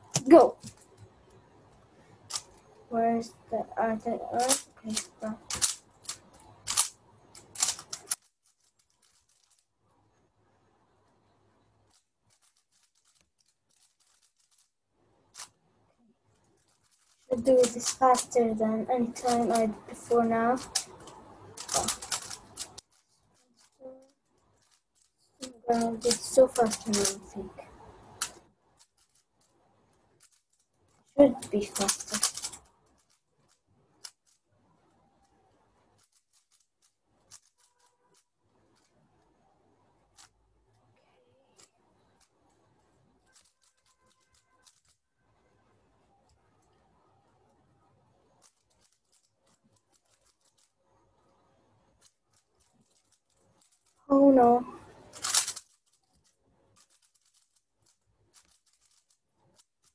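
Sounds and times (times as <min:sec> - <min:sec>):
puzzle cube plastic clicks: 0:02.2 - 0:02.7, 0:04.3 - 0:09.6, 0:11.8 - 0:14.7, 0:15.4 - 0:15.6, 0:16.4 - 0:18.5, 0:19.1 - 0:29.6, 0:30.2 - 0:38.9, 0:43.2 - 0:45.0, 0:48.3 - 0:50.8, 0:54.7 - 0:59.9.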